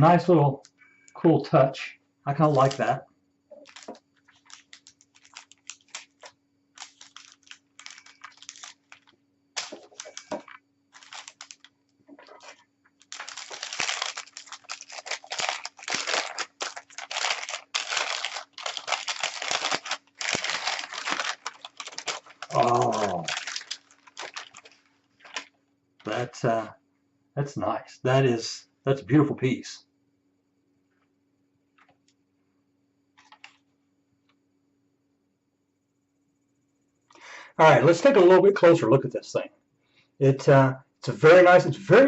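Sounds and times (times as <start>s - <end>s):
faint steady hum: 0.0s - 42.0s
packaging crinkling and tearing: 2.5s - 2.9s, 3.6s - 25.5s.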